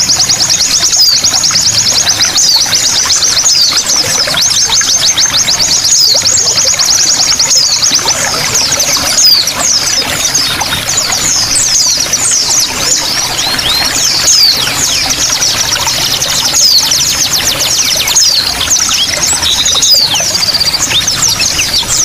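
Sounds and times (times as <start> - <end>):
songbirds chirping: 0.0 - 22.0
water trickling: 0.0 - 22.0.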